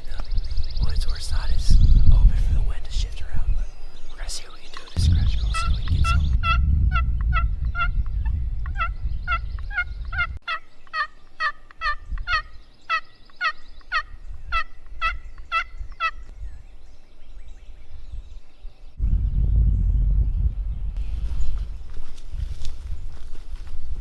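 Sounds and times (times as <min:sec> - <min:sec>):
wind rumble on microphone: 0:00.0 - 0:10.4, 0:11.9 - 0:12.6, 0:14.0 - 0:24.0.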